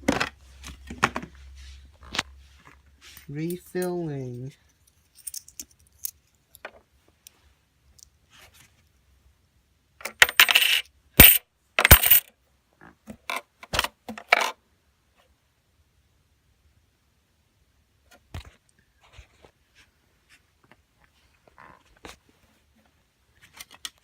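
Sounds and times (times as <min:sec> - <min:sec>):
coins clinking: 0:10.1 - 0:12.3.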